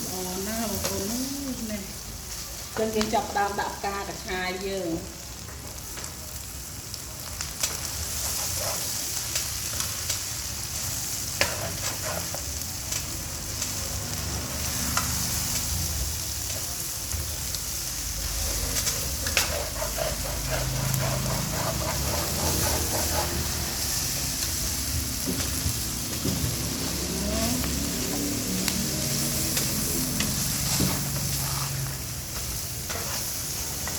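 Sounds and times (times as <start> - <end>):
noodles sizzling in a pan: 0.0 - 33.9
utensil scraping a pan: 8.1 - 9.2, 11.3 - 12.5, 18.2 - 24.3, 29.5 - 33.9.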